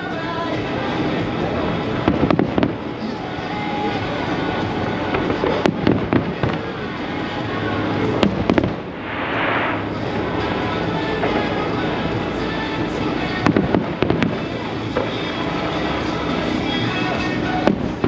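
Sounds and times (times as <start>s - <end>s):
fireworks exploding bangs: 2.0s - 2.9s, 5.0s - 11.8s, 13.4s - 16.0s, 16.8s - 18.0s
fireworks hiss: 8.4s - 11.4s.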